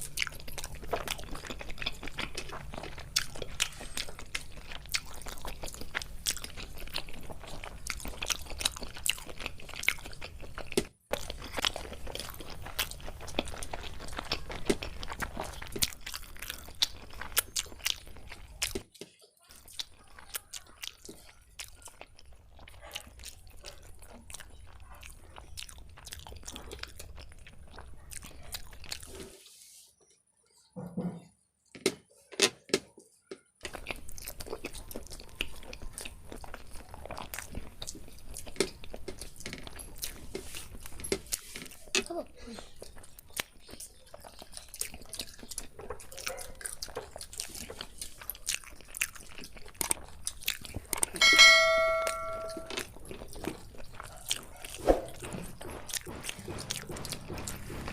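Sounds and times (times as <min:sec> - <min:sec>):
people chewing food: 0:00.0 - 0:30.8, 0:31.4 - 0:57.9
mouth clicks and smacks: 0:52.0 - 0:57.9
crunching bites: 0:52.7 - 0:57.9.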